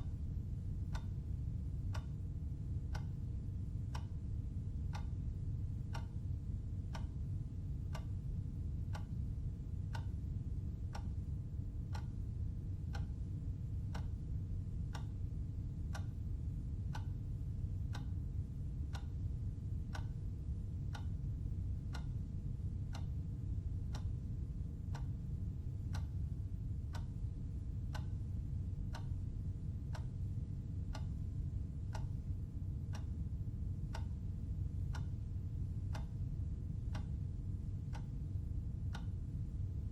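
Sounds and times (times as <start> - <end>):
clock ticking: 0.9 - 2.2, 2.9 - 3.2, 4.9 - 5.2, 5.8 - 6.3, 6.9 - 7.2, 7.9 - 8.2, 8.9 - 9.2, 9.9 - 10.1, 11.9 - 12.2, 12.8 - 14.2, 14.9 - 15.2, 15.9 - 16.2, 16.9 - 17.2, 17.9 - 18.2, 18.8 - 19.3, 19.9 - 20.2, 20.8 - 21.2, 21.8 - 22.2, 22.9 - 23.2, 23.9 - 24.1, 24.9 - 25.1, 25.9 - 26.2, 29.9 - 30.1, 30.9 - 33.1, 33.9 - 34.1, 34.8 - 35.2, 35.8 - 36.3, 36.9 - 37.2, 38.9 - 39.2.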